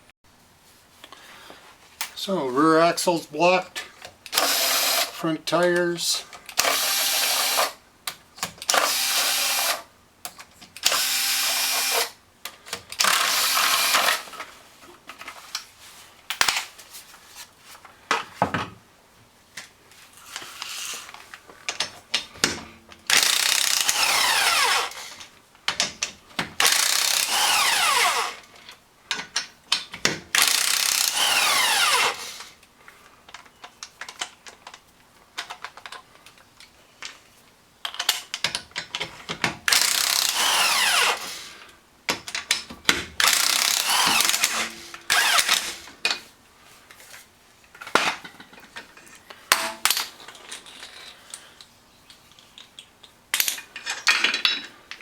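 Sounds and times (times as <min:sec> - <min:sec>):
power tool bursts: 0:04.3 - 0:05.2, 0:06.6 - 0:07.8, 0:08.7 - 0:09.8, 0:10.8 - 0:12.2, 0:13.0 - 0:14.3, 0:23.1 - 0:25.2, 0:26.6 - 0:28.4, 0:30.4 - 0:32.5, 0:39.7 - 0:41.5, 0:43.2 - 0:45.9.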